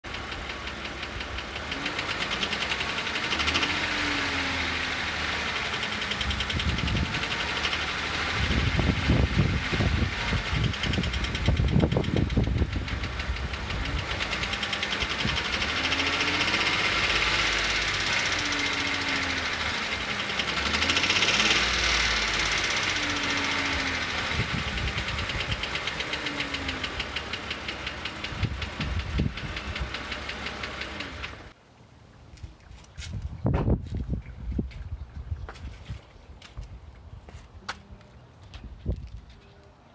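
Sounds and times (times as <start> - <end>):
engine running with clicking: 0.0 - 31.6.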